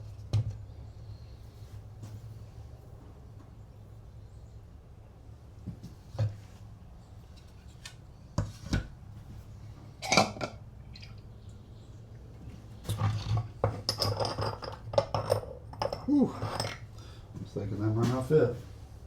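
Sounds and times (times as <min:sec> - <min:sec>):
metal grinder parts clinking: 0:12.9 - 0:16.8.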